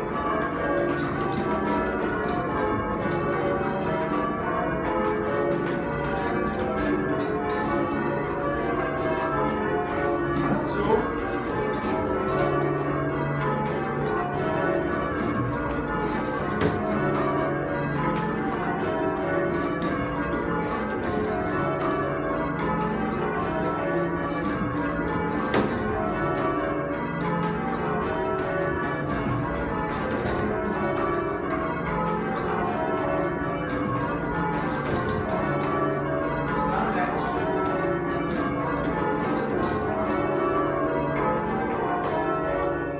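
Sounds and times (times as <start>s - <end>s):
church bells change ringing: 0.0s - 42.9s.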